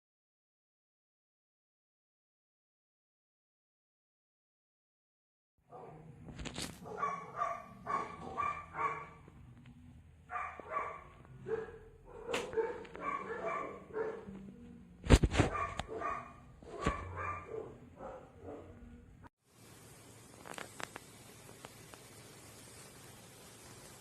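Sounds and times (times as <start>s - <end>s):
dog barking and yapping: 6.8s - 9.3s, 10.3s - 14.5s, 15.3s - 18.9s.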